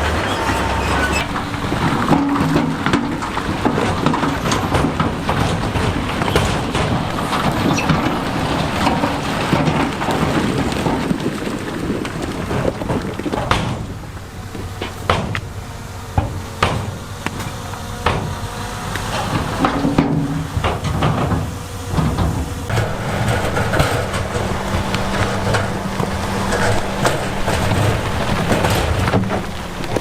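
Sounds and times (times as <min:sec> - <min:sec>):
diesel engine running: 0:00.0 - 0:30.0
stones crunching and clattering: 0:01.2 - 0:15.5.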